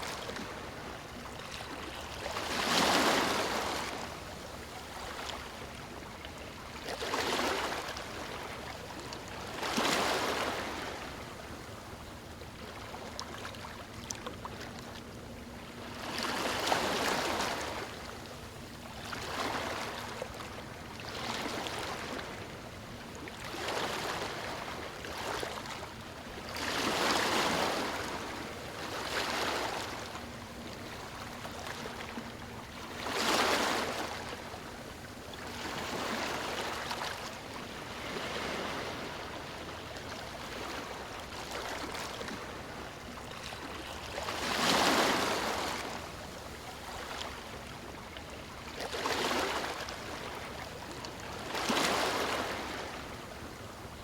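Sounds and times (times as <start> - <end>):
waves breaking on stony shore: 1.7 - 4.0, 26.5 - 30.1, 33.0 - 34.3, 35.5 - 39.6, 40.2 - 42.8, 43.5 - 46.0, 48.7 - 50.6, 51.3 - 53.0.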